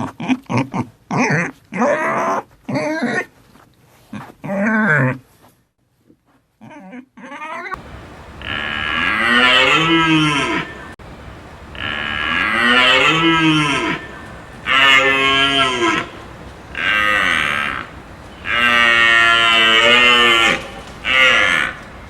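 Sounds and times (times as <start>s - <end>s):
faint short calls: 7.8s - 22.0s
cow mooing: 8.2s - 22.0s.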